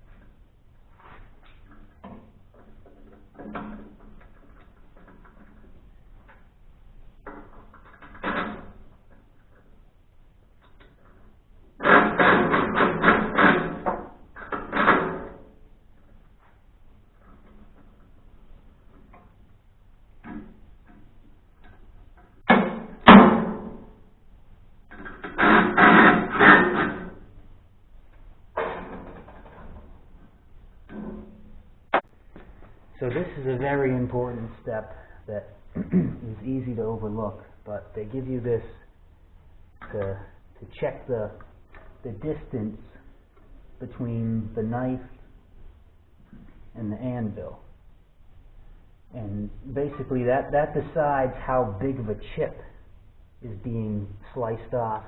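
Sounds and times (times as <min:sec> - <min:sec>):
quiet handling noises: 0:00.0 - 0:55.0
metal clanks and knocks: 0:01.0 - 0:24.2, 0:24.8 - 0:33.3
metal clunks: 0:20.2 - 0:24.1, 0:28.1 - 0:32.8.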